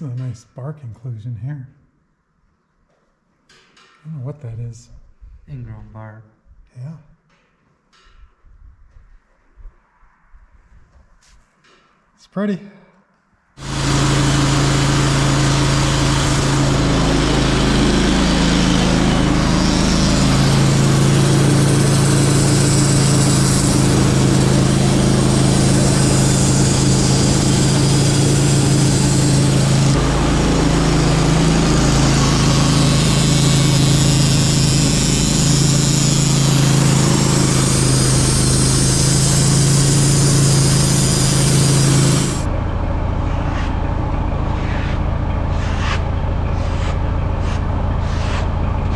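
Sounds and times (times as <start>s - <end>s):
saw blade cutting log: 13.6s - 42.5s, 43.3s - 43.8s, 44.5s - 48.9s
sawmill engine running: 13.6s - 48.9s.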